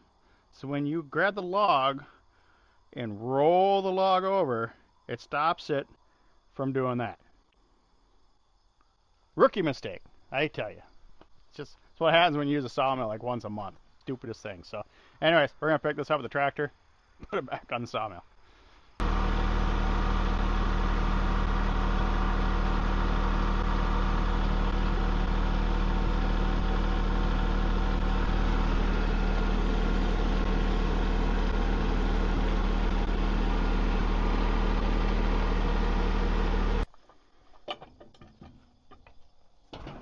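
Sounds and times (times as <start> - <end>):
tractor engine running: 19.0 - 36.9.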